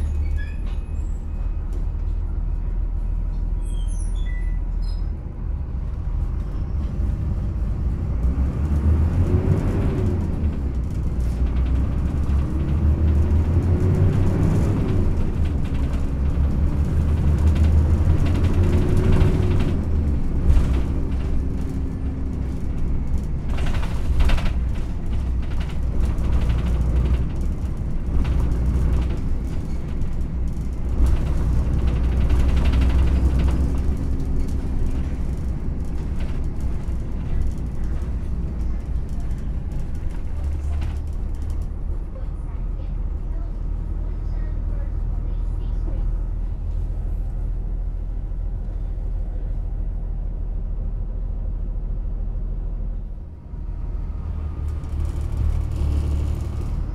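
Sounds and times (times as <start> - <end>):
bus diesel engine: 0.0 - 56.9
constant low rumble: 0.0 - 56.9.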